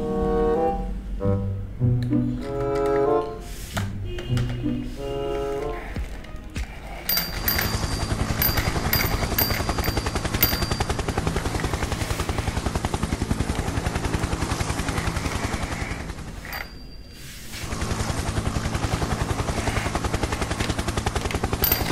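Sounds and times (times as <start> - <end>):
toy vehicle rattling sound effect: 5.1 - 21.9.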